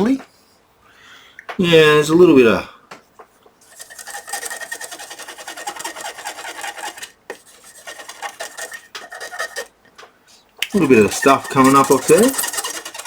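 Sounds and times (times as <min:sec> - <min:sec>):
cotton bud scrubbing circuit board: 0:03.7 - 0:09.8, 0:10.6 - 0:13.0.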